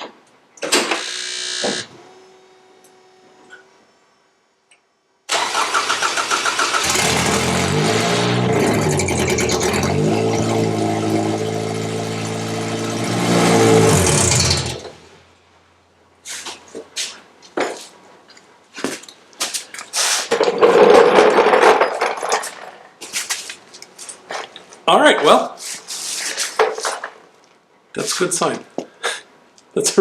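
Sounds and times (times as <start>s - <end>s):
engine running without exhaust: 6.8s - 15.2s.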